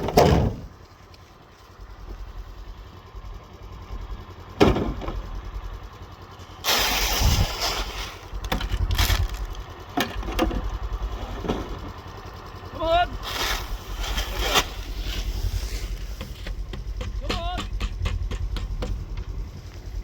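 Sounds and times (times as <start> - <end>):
engine idling: 0.0 - 20.0
burst of rushing noise: 6.7 - 8.3
sharp knocks: 16.2 - 19.3.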